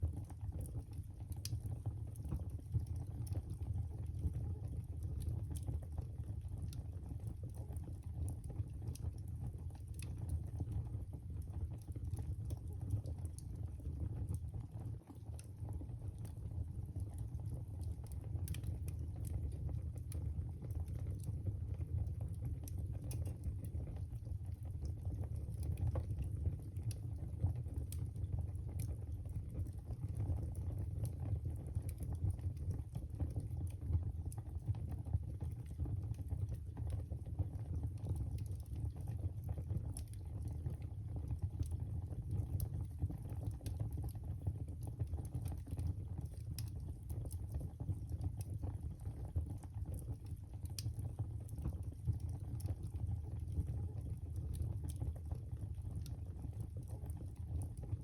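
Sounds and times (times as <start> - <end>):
wood fire burning: 0.0 - 58.0.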